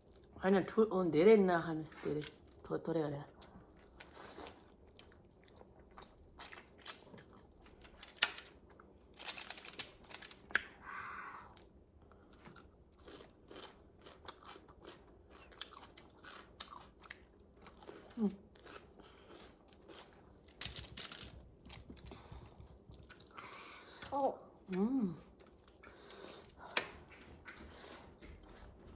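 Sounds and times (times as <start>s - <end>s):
chewing with wet mouth smacks: 11.6s - 20.5s.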